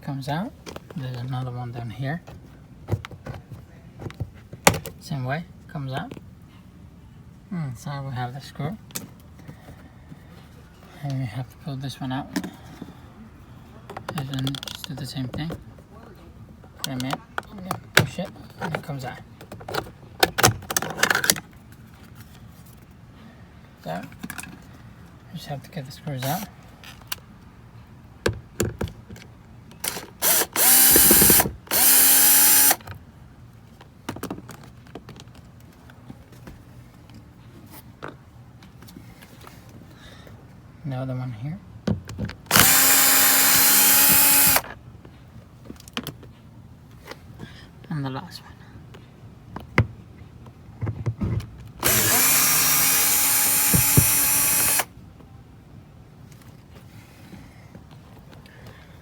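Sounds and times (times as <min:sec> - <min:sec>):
cordless screwdriver motor whine: 0:29.9 - 0:32.8, 0:42.5 - 0:44.7, 0:51.8 - 0:54.9
power drill running: 0:29.9 - 0:32.8, 0:42.5 - 0:44.7, 0:51.8 - 0:54.9.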